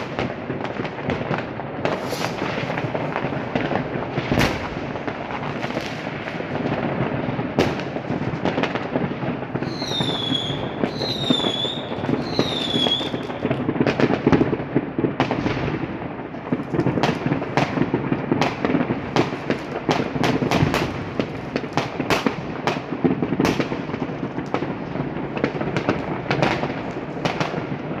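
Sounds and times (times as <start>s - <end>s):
fireworks crackling and banging: 0.0s - 28.0s
high falling whistles: 9.6s - 13.2s.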